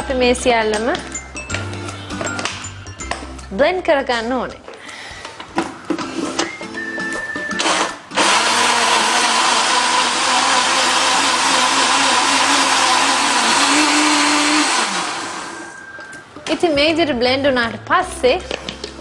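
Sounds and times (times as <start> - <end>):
electric blender running: 7.6 - 15.8.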